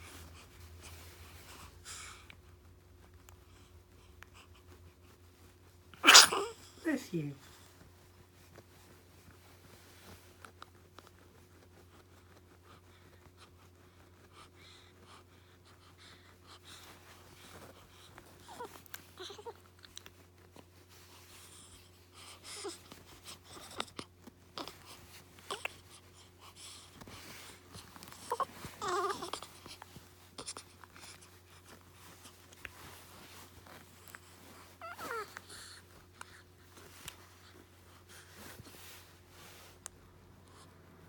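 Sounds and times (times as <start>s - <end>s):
baby whimpering: 28.2s - 29.6s, 34.8s - 35.8s.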